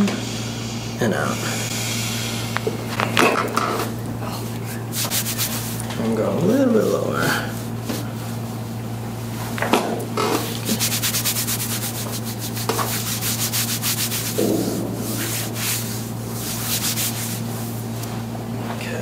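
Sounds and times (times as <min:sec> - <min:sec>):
steady low hum: 0:00.0 - 0:19.0
rhythmic rubbing on back: 0:04.7 - 0:05.9, 0:10.7 - 0:18.3.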